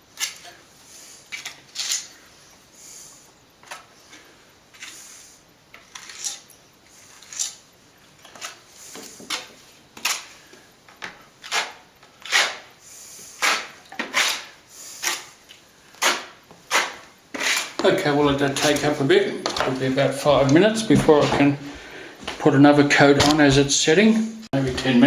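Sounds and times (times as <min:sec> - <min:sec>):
plastering blade scraping wall: 0:04.7 - 0:10.5, 0:11.1 - 0:21.7.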